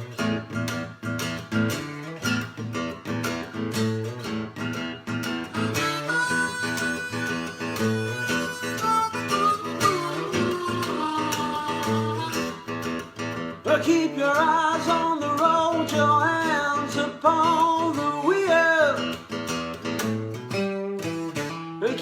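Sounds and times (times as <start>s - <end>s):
acoustic guitar strumming blues: 0.0s - 22.0s
harmonica long bending notes: 5.1s - 13.5s.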